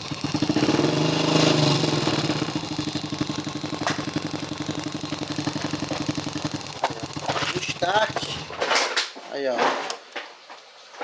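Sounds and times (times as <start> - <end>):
motorcycle engine revving and idling: 0.0 - 8.7.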